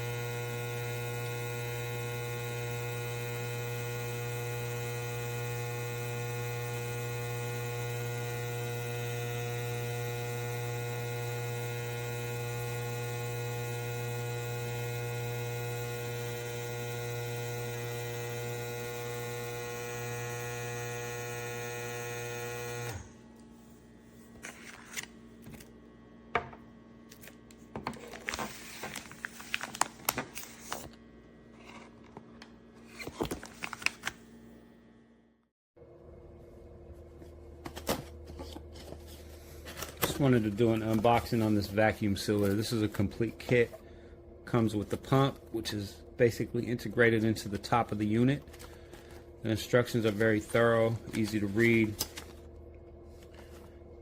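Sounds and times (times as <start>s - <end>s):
vacuum pump motor humming: 0.0s - 23.5s.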